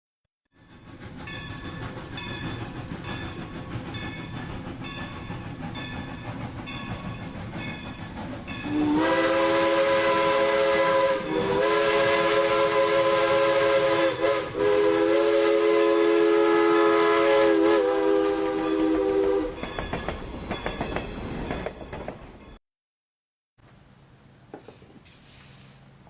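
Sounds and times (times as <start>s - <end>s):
train rumbling: 0.5s - 22.6s
loud train horn chord: 8.6s - 19.6s.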